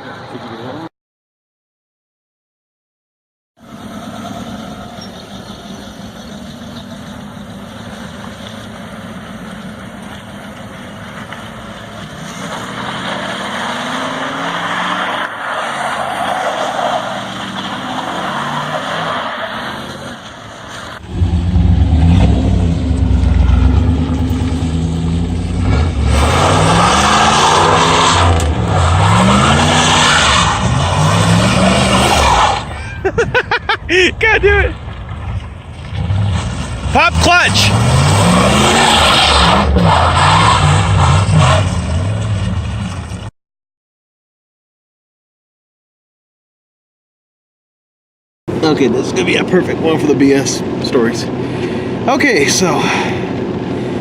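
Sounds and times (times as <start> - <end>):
car engine under load: 3.6 - 43.3, 48.5 - 54.0
engine revving: 12.0 - 15.8, 21.0 - 32.7, 35.8 - 42.9.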